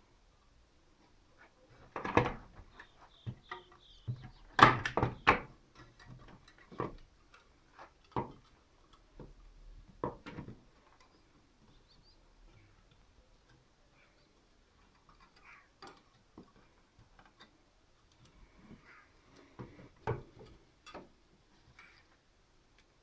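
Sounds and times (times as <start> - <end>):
clicks and knocks on wooden frame: 1.8 - 7.1, 10.0 - 10.7.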